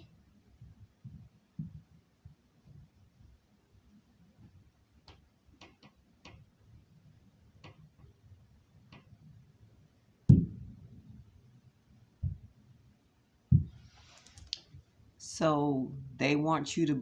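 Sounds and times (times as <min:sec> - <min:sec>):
heavy thud through ceiling: 0:10.3 - 0:11.0, 0:13.5 - 0:13.8.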